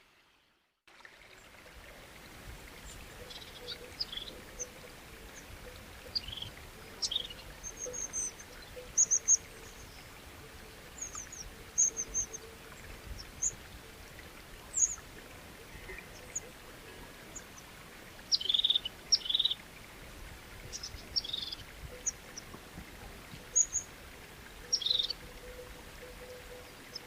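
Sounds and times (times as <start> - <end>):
outdoor background noise: 0.0 - 27.0
small birds chirping: 2.8 - 4.7, 5.3 - 10.1, 11.0 - 12.5, 14.6 - 15.0, 18.3 - 19.6, 20.7 - 22.5, 23.5 - 23.9, 24.6 - 25.2.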